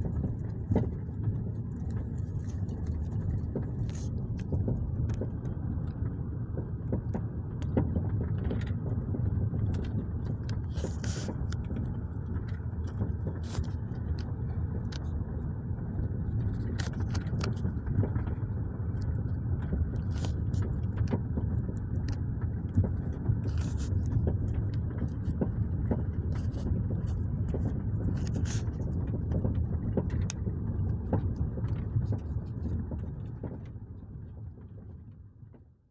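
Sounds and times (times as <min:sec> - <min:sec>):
car road rumble: 0:00.0 - 0:35.7.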